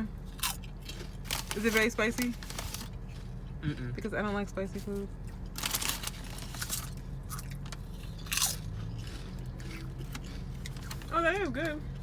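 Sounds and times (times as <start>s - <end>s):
potato chip crunching: 0.0s - 4.4s, 5.2s - 11.4s
chewing: 2.6s - 4.4s, 5.2s - 11.1s.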